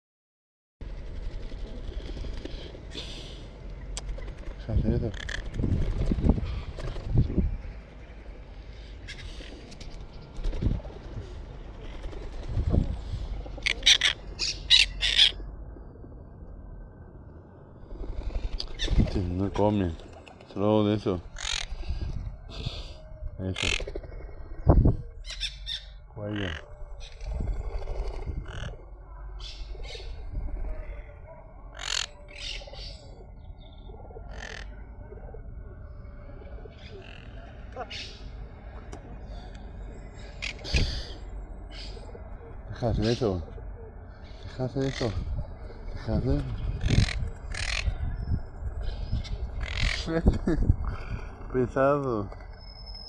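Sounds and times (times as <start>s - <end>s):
parrot squawking: 13.6s - 15.4s, 21.3s - 21.8s, 25.3s - 27.2s, 31.8s - 32.9s, 34.3s - 34.8s, 46.6s - 48.2s, 49.2s - 50.1s.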